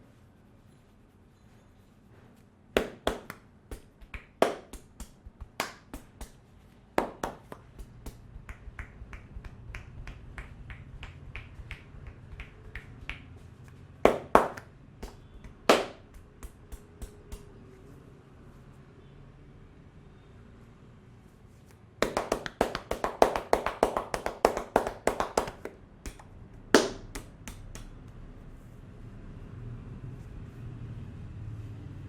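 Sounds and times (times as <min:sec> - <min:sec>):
hands slapping and patting: 0:02.8 - 0:17.6, 0:21.7 - 0:28.2.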